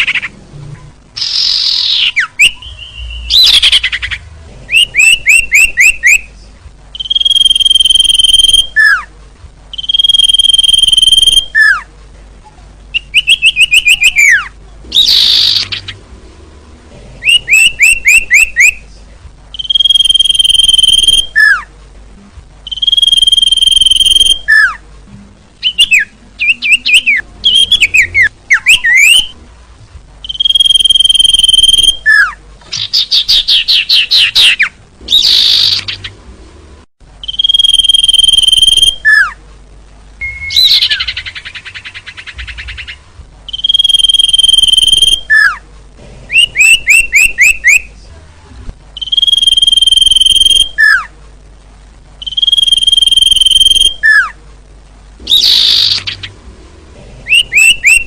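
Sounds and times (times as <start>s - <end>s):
high bird whistles: 1.2s - 6.3s, 7.0s - 9.0s, 9.8s - 11.8s, 17.2s - 18.8s, 19.6s - 21.6s, 22.7s - 24.8s, 25.6s - 29.3s, 30.2s - 36.0s, 37.2s - 39.4s, 40.2s - 45.6s, 49.0s - 51.0s, 52.2s - 54.4s, 55.3s - 56.3s
downward-swept bird chirps: 7.0s - 9.1s, 9.7s - 11.8s, 19.5s - 21.6s, 22.6s - 24.8s, 30.2s - 36.1s, 37.2s - 39.4s, 40.2s - 45.6s, 49.0s - 51.1s, 52.2s - 54.3s, 55.3s - 56.3s.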